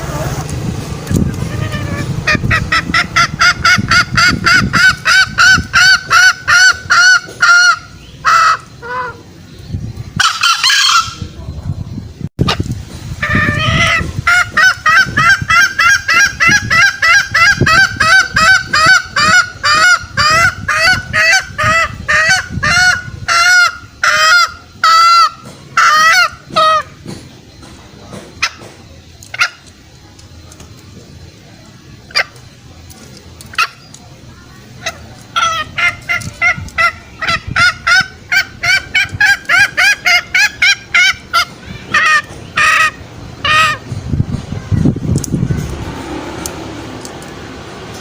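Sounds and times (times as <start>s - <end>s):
bird clucking call: 0.0s - 11.8s, 12.4s - 30.9s, 31.8s - 44.1s
click: 45.2s - 45.4s.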